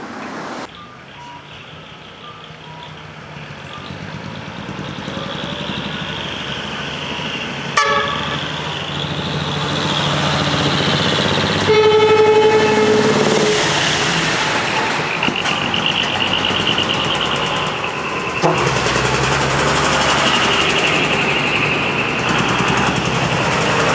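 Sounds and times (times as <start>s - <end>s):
diesel truck engine pulling away: 0.0s - 23.9s
short horn toot: 7.8s - 8.8s, 11.6s - 14.2s
air horn blast: 7.8s - 8.9s, 11.4s - 15.0s.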